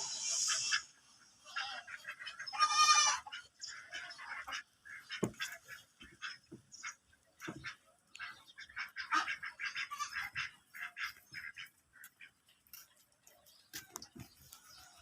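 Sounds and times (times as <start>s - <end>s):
goat bleating: 1.5s - 3.3s, 9.7s - 10.3s.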